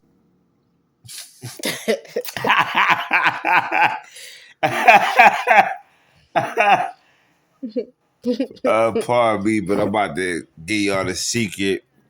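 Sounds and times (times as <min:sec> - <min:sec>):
person laughing: 0:01.1 - 0:05.8, 0:06.4 - 0:07.0.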